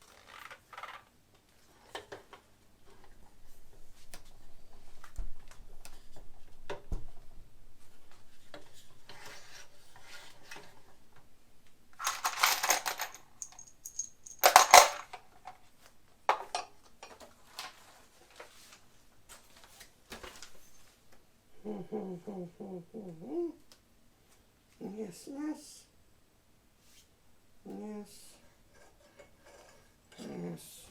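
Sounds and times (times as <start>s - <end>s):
metal clanking and rattling: 12.0s - 15.2s
metal parts clicking and knocking: 12.0s - 15.2s.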